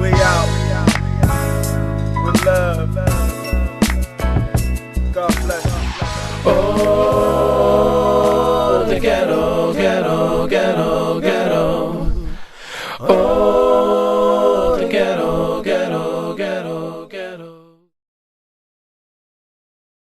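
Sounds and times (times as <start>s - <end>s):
wordless sung vocal harmony: 5.6s - 17.9s.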